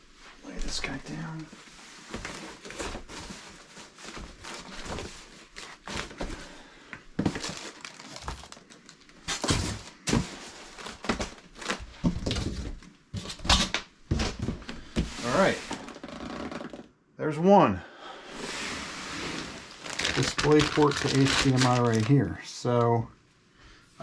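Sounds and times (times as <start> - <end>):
packaging rustling and crinkling: 1.6 - 6.5, 7.2 - 16.2, 18.4 - 22.9.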